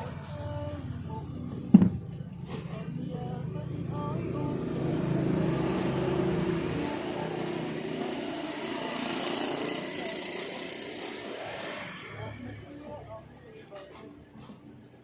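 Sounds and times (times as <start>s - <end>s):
electric water pump motor running: 4.5s - 12.3s
hiss: 7.7s - 12.6s.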